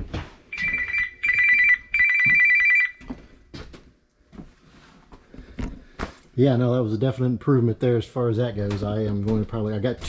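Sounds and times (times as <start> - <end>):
telephone bell ringing: 0.5 - 3.1.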